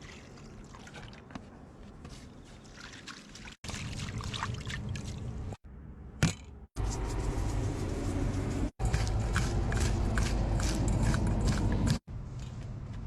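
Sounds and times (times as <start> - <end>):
water pouring and trickling: 0.0 - 1.4, 2.4 - 5.6.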